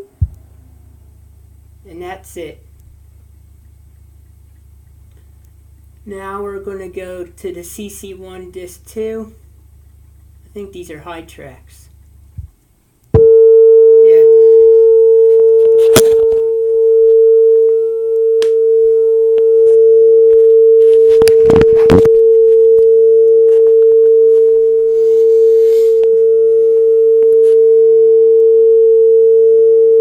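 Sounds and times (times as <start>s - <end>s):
steady mid-pitched test tone: 13.2s - 28.4s.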